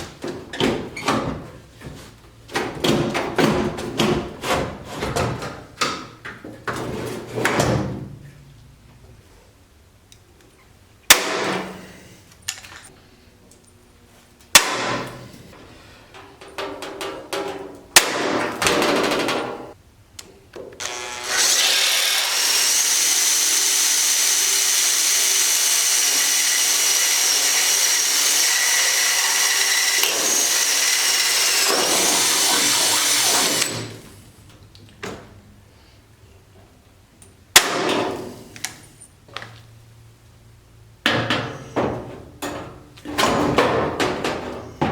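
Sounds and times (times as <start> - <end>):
power drill whining: 20.8 - 34.0.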